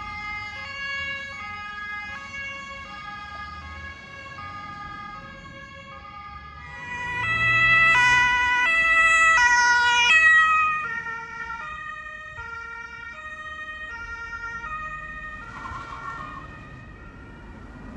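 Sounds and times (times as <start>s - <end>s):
two-tone emergency siren: 0.0s - 17.9s.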